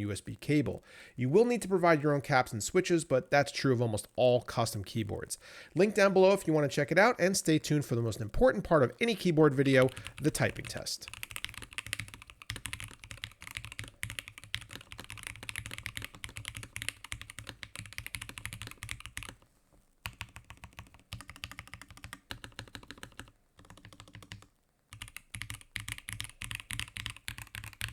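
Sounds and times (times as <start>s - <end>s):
mechanical keyboard typing: 9.8s - 19.4s, 20.0s - 27.9s.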